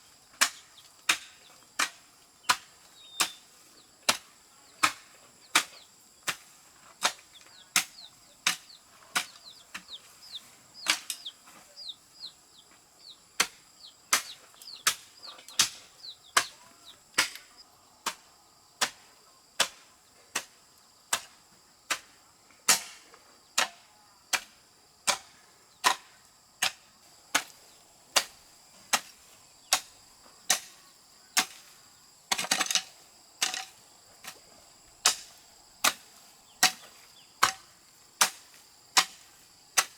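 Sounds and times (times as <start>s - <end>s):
chopping blows: 13.4s - 17.5s.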